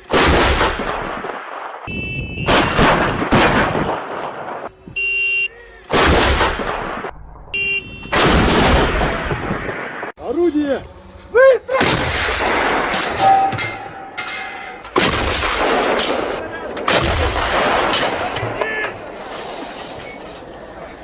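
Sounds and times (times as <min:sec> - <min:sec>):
artillery guns firing: 0:00.0 - 0:04.7, 0:05.9 - 0:07.1, 0:08.0 - 0:10.1, 0:11.8 - 0:19.2.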